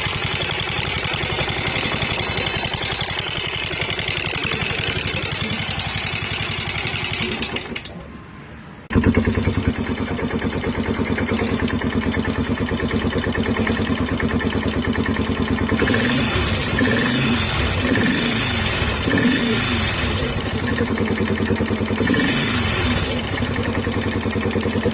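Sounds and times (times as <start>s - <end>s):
motorcycle engine running: 0.0s - 7.9s, 8.9s - 24.9s.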